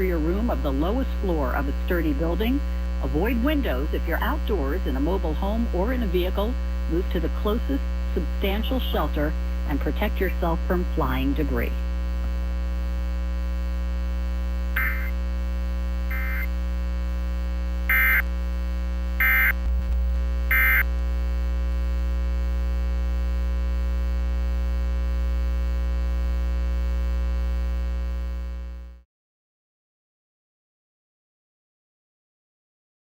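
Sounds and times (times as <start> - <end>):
steady electrical hum: 0.0 - 29.0
digital data bursts: 14.8 - 15.2, 16.1 - 16.5, 17.9 - 18.2, 19.2 - 19.6, 20.5 - 20.8.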